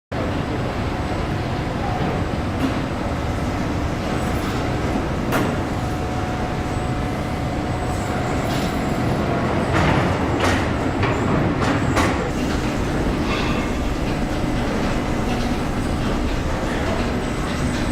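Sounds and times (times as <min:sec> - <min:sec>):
machinery low rumble: 0:00.2 - 0:17.9
hisses and clatters: 0:09.7 - 0:17.9.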